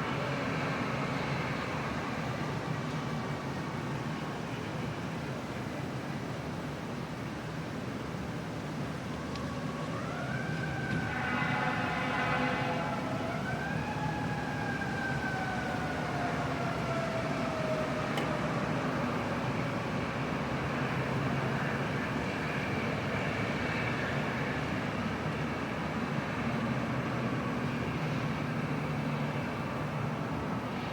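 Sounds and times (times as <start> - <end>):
city traffic noise: 0.0 - 30.9
fire engine siren wailing: 8.7 - 30.9
horn blast: 11.0 - 13.0.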